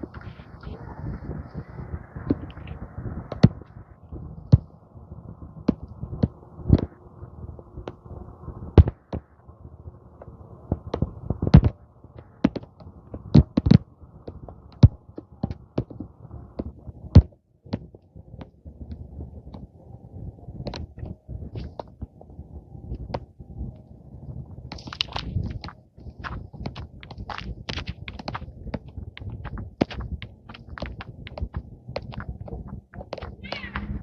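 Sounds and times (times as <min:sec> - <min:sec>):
wind rumble on microphone: 0:00.0 - 0:34.0
footsteps on dirt trail: 0:24.7 - 0:34.0.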